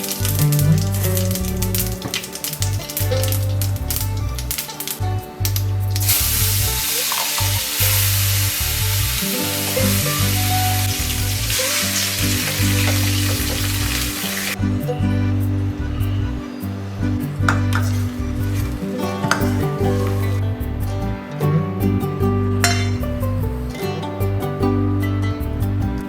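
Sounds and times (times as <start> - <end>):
food sizzling in oil: 0.0 - 14.6, 17.7 - 20.4
soft background music: 0.0 - 26.0.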